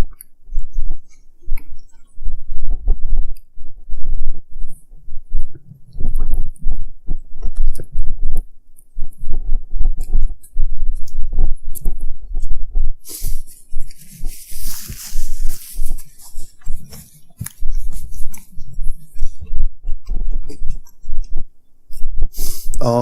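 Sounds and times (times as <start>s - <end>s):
hissing burst: 13.0s - 16.4s, 22.3s - 22.8s.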